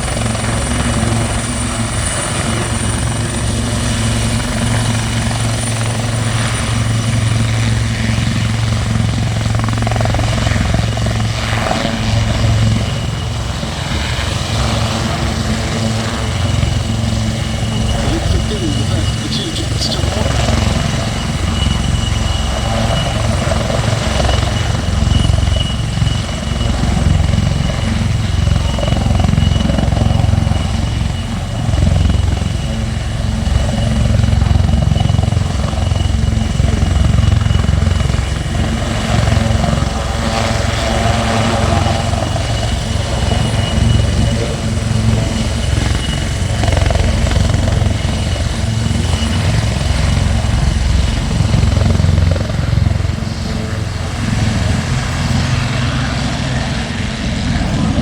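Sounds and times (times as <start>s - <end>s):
helicopter rotor: 0.0s - 58.0s
high turbine whine: 16.1s - 22.6s.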